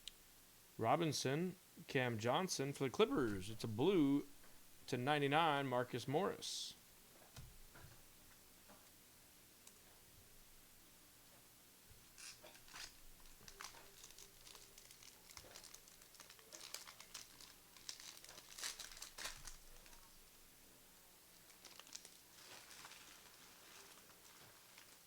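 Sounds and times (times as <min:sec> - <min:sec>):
foil wrapper crinkling: 0:12.2 - 0:20.2, 0:21.3 - 0:25.0.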